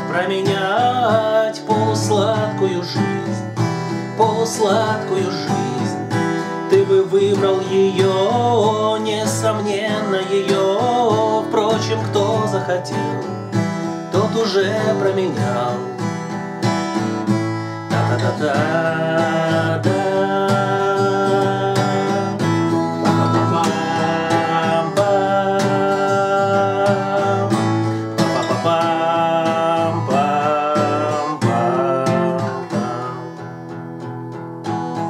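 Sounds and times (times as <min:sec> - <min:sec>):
person singing wordless melody: 0:00.0 - 0:16.3, 0:17.5 - 0:34.0
acoustic guitar playing: 0:00.0 - 0:35.0.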